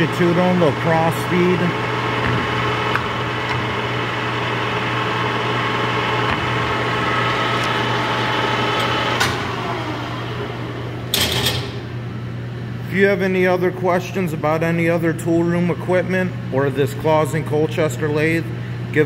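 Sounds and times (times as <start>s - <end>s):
lathe gear whir: 0.0s - 11.8s.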